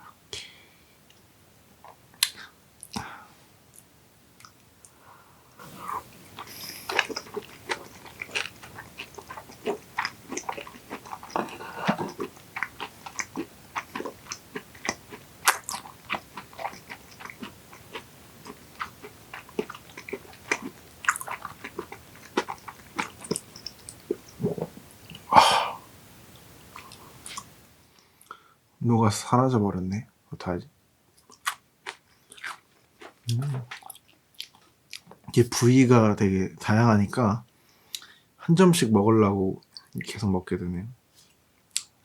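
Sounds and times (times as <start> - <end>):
wet chewing mouth smacks: 6.3 - 25.2, 26.8 - 27.5.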